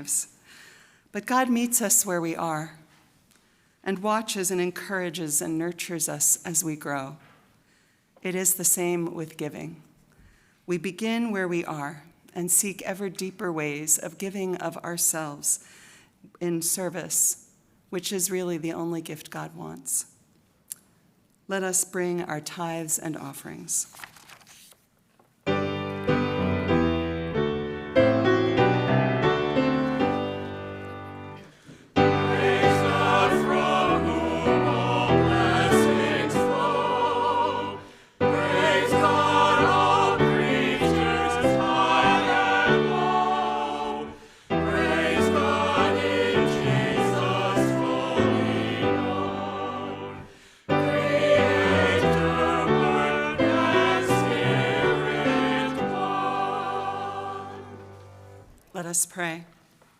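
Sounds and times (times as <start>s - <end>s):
instrumental accompaniment: 25.4s - 58.5s
church choir singing: 25.8s - 58.5s.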